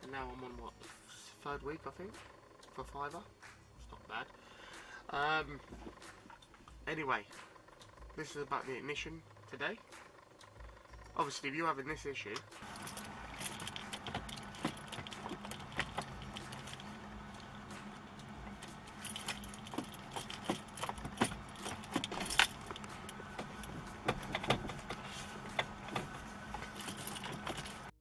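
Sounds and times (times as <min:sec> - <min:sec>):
low steady hum: 0:00.0 - 0:28.0
ignition switch clicks: 0:12.4 - 0:27.9
keys jangling: 0:12.6 - 0:27.9.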